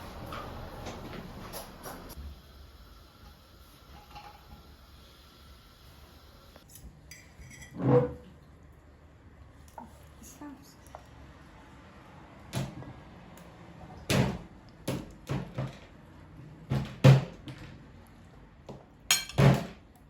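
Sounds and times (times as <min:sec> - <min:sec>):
household knocks and thuds: 0:19.2 - 0:19.8.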